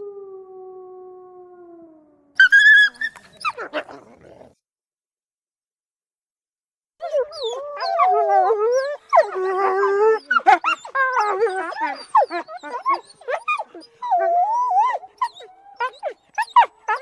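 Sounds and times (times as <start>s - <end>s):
wolf yelping and whimpering: 2.4s - 4.5s, 7.0s - 17.0s
wolf howling: 7.0s - 17.0s.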